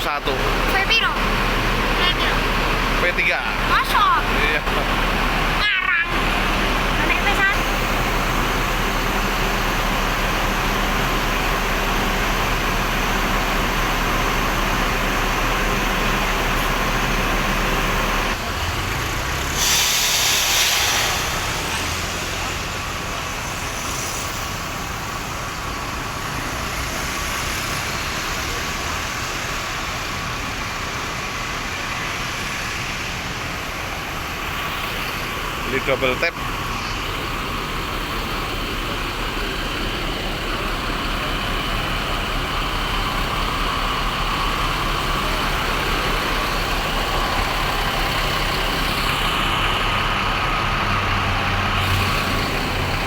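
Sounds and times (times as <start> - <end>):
bus engine idling: 0.0 - 53.0
vehicle and traffic noise: 0.0 - 53.0
air hiss: 19.4 - 25.2.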